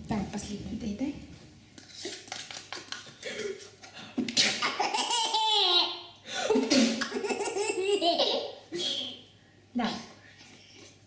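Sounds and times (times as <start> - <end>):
baby laughing: 4.6 - 6.1, 6.9 - 8.6.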